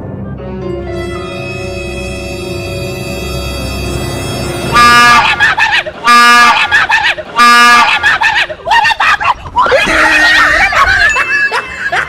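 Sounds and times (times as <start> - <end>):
train horn blasts: 0.9 - 5.4, 6.1 - 6.6.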